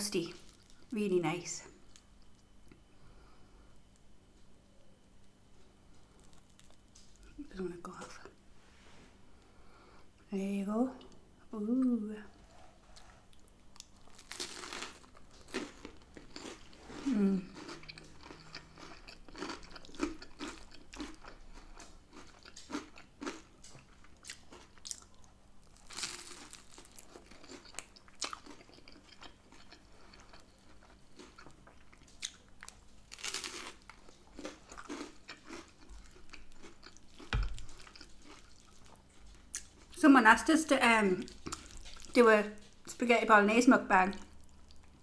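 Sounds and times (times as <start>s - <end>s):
crunching and chewing bread: 0.3s - 1.0s, 1.8s - 7.4s, 12.3s - 40.0s, 41.2s - 43.0s.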